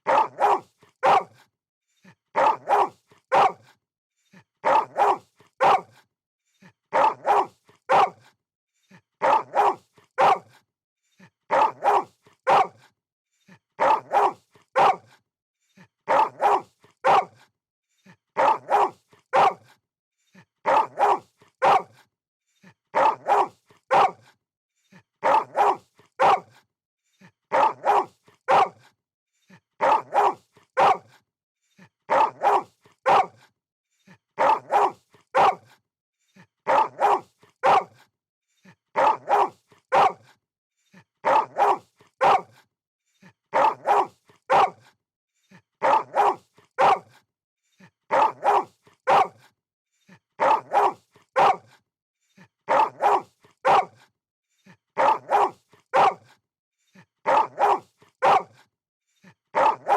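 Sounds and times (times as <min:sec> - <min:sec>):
dog barking: 0:00.0 - 0:01.4, 0:02.4 - 0:03.8, 0:04.6 - 0:06.0, 0:06.9 - 0:08.3, 0:09.2 - 0:10.6, 0:11.5 - 0:12.9, 0:13.8 - 0:15.2, 0:16.1 - 0:17.5, 0:18.4 - 0:19.8, 0:20.6 - 0:22.0, 0:22.9 - 0:24.4, 0:25.2 - 0:26.6, 0:27.5 - 0:29.0, 0:29.8 - 0:31.2, 0:32.1 - 0:33.5, 0:34.4 - 0:35.8, 0:36.6 - 0:38.1, 0:39.0 - 0:40.4, 0:41.2 - 0:42.6, 0:43.5 - 0:45.0, 0:45.8 - 0:47.2, 0:48.1 - 0:49.5, 0:50.4 - 0:51.8, 0:52.7 - 0:54.0, 0:55.0 - 0:56.4, 0:57.2 - 0:58.7, 0:59.5 - 0:59.9.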